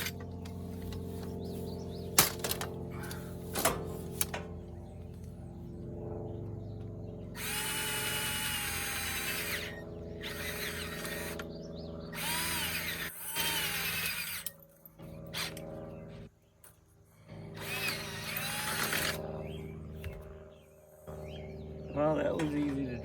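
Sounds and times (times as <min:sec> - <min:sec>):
electric drill motor humming: 0:00.0 - 0:04.4, 0:07.3 - 0:16.0, 0:17.4 - 0:20.2
drill bit grinding metal: 0:07.4 - 0:11.5, 0:12.1 - 0:14.6, 0:17.6 - 0:19.2.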